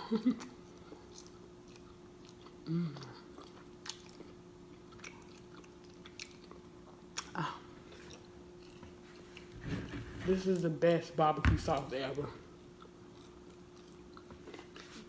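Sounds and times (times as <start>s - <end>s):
steady low hum: 0.0s - 15.0s
chewing and lip smacking: 0.4s - 9.6s, 12.8s - 15.0s.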